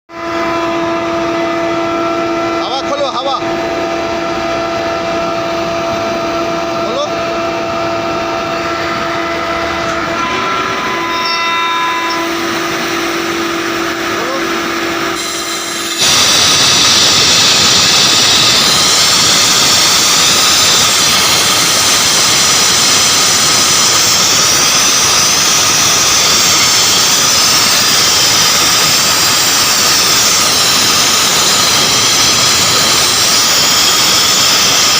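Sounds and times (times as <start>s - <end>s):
air compressor humming: 0.2s - 34.9s
compressed air hissing out: 15.2s - 34.9s.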